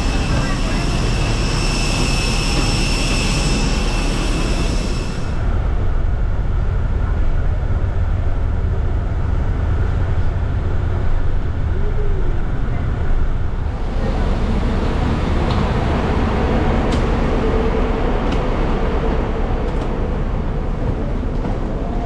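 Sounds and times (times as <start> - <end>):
aircraft high-pitched whine: 0.0 - 5.4
vehicle engine rumble: 5.3 - 22.0.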